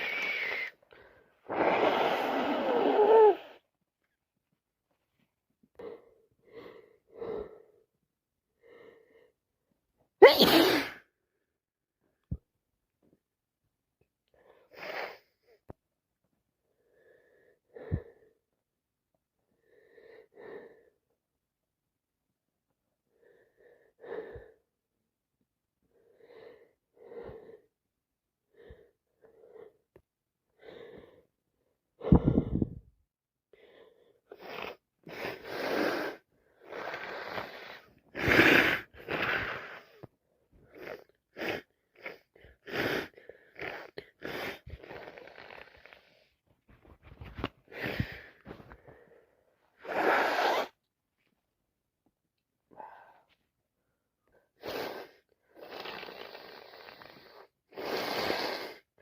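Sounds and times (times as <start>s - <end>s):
short breathy sounds: 0.0s - 3.6s, 32.0s - 32.9s, 52.7s - 53.4s
woman sneezing: 10.2s - 11.1s.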